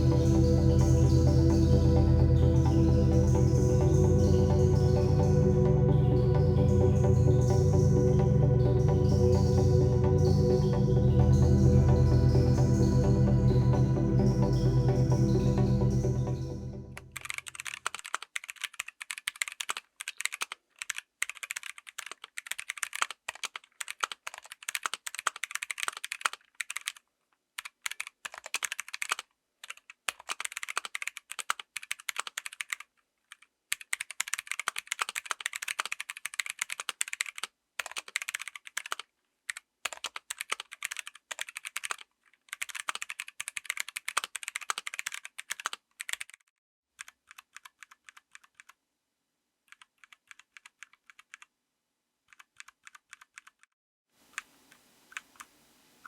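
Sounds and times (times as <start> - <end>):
mechanical keyboard key clacks: 17.2 - 27.0, 27.6 - 46.4.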